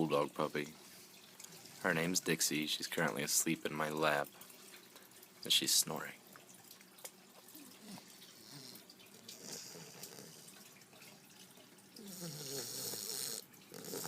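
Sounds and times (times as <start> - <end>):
puppy snoring: 7.7 - 10.6, 12.0 - 14.0.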